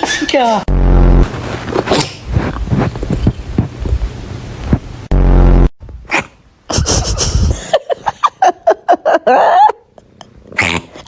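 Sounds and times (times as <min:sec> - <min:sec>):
loud low buzz: 0:00.7 - 0:05.8
person laughing: 0:06.7 - 0:09.9.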